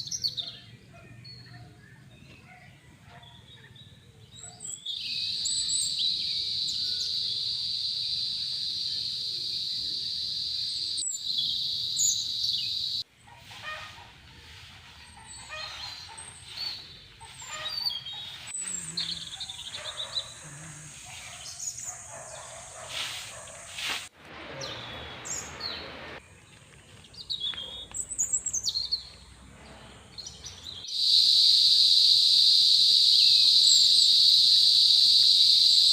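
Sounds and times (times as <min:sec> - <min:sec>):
birds chirping: 0:00.0 - 0:35.9
crickets trilling: 0:05.2 - 0:13.0, 0:18.5 - 0:23.2, 0:30.9 - 0:35.9.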